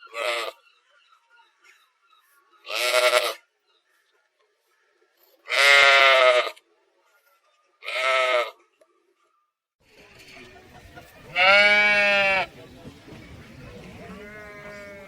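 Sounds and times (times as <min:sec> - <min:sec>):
sheep bleating: 0:00.0 - 0:00.6, 0:02.7 - 0:03.4, 0:05.5 - 0:06.6, 0:07.8 - 0:08.6, 0:11.2 - 0:12.6, 0:13.3 - 0:15.0.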